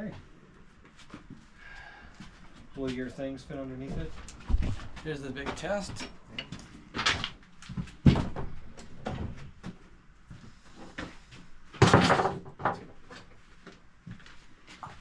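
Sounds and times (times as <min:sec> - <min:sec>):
objects knocking on shelf: 0:11.8 - 0:12.9.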